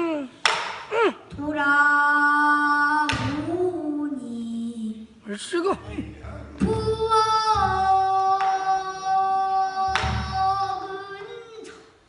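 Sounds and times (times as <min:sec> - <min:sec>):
girl singing long note: 0:01.3 - 0:05.1, 0:06.6 - 0:11.7.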